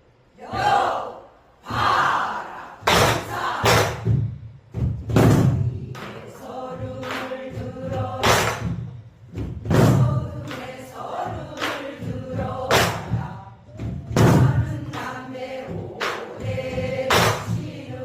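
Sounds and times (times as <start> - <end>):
barrel drum strokes: 7.5 - 10.6.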